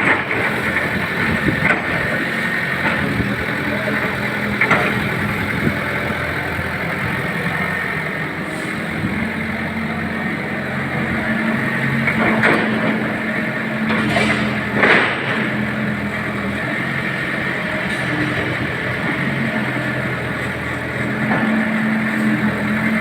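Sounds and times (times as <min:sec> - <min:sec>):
excavator diesel engine running: 0:00.0 - 0:23.0.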